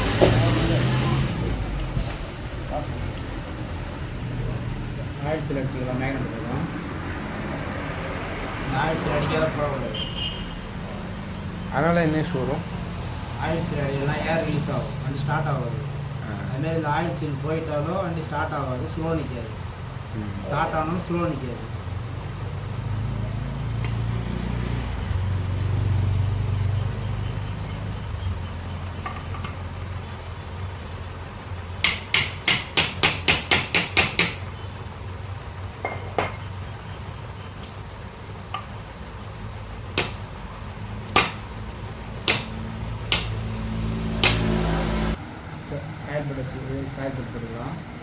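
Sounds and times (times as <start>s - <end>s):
hammer tapping on metal: 31.8s - 34.6s, 35.8s - 36.6s, 40.0s - 40.3s, 41.1s - 41.6s, 42.2s - 43.5s, 44.2s - 44.7s.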